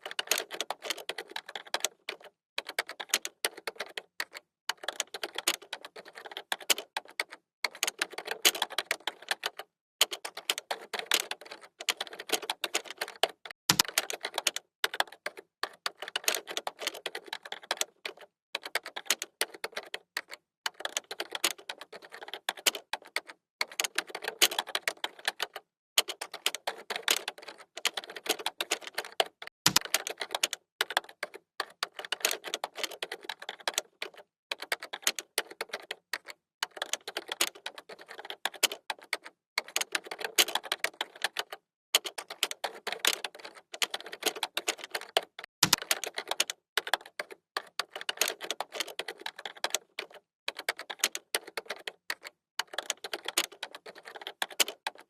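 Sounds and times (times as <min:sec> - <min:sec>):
keyboard typing clicks: 0:20.8 - 0:55.0.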